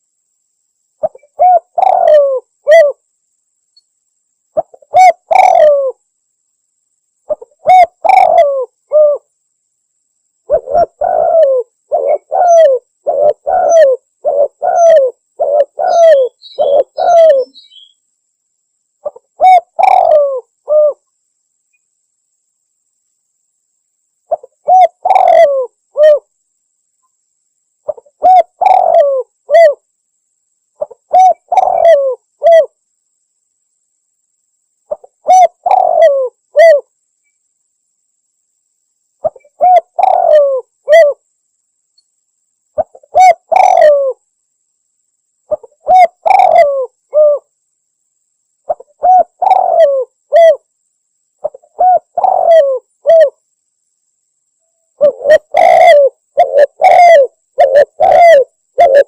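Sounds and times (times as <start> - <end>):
dove cooing: 1.0 - 3.0, 4.6 - 6.0, 7.3 - 9.3, 10.5 - 17.9, 19.0 - 21.0, 24.3 - 26.3, 27.9 - 29.8, 30.8 - 32.8, 34.9 - 36.9, 39.2 - 41.2, 42.8 - 44.2, 45.5 - 47.5, 48.7 - 50.7, 51.4 - 53.4, 55.0 - 59.0.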